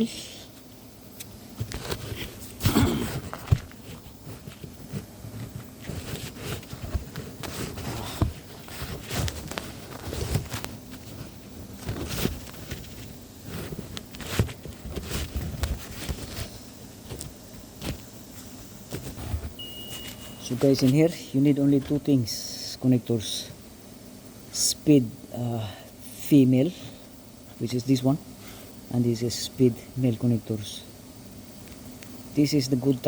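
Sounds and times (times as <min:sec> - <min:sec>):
connectors and packaging rustling: 0:01.6 - 0:22.1.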